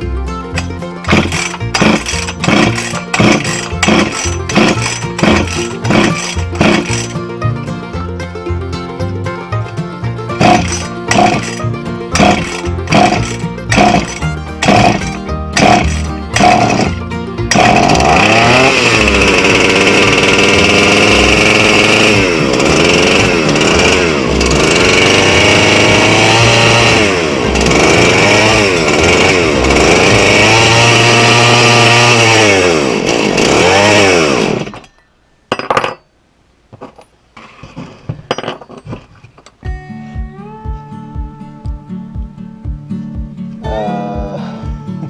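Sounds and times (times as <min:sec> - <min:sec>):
chainsaw revving: 0:00.6 - 0:07.2, 0:10.3 - 0:34.9.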